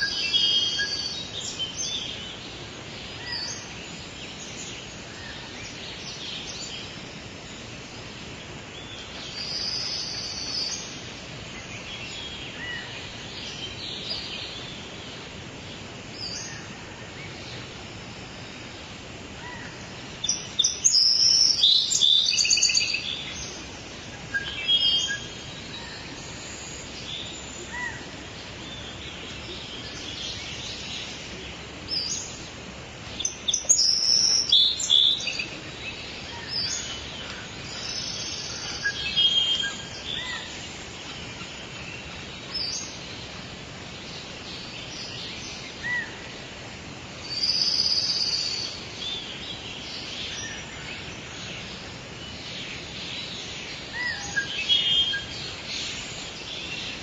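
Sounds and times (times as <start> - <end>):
birds singing and chirping: 0.0 - 57.0
steady background hiss: 0.0 - 57.0.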